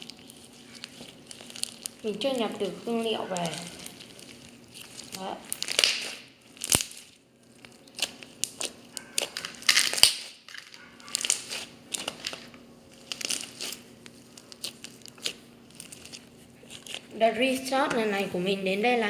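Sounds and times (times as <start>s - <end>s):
slime crackling and popping: 0.0s - 19.0s.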